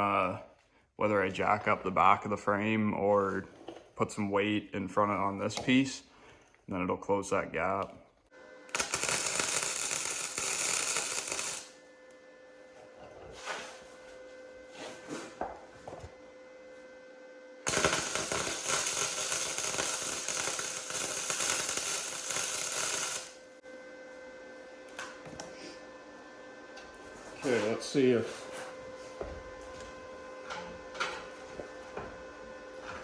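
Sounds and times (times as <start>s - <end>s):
welder arc crackling: 8.7s - 11.8s, 17.7s - 23.5s.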